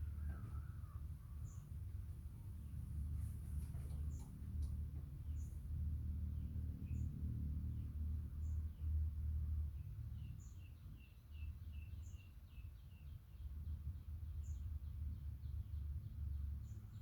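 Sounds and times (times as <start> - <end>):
steady low rumble: 0.0 - 10.2.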